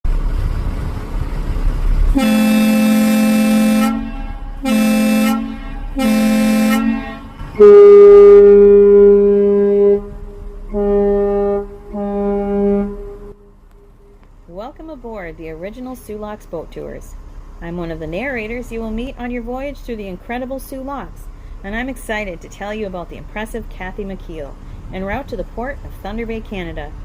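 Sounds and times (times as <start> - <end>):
low rumble: 0.0 - 20.4
ship horn blasts: 2.1 - 14.2.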